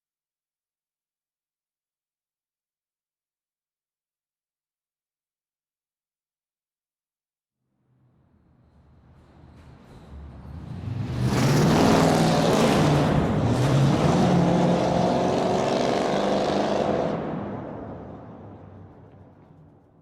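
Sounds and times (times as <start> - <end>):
loud car engine wavering: 10.5 - 18.2.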